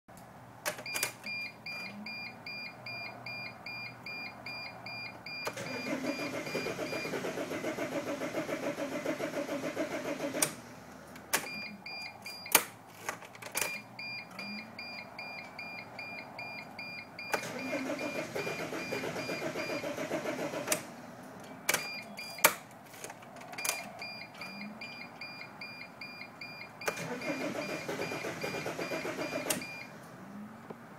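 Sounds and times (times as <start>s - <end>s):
dashboard warning chime beeping: 0.8s - 7.1s, 11.4s - 12.6s, 13.6s - 20.6s, 21.7s - 22.6s, 23.6s - 30.0s
diesel engine cranking: 5.3s - 11.5s, 17.2s - 24.9s, 26.4s - 30.2s.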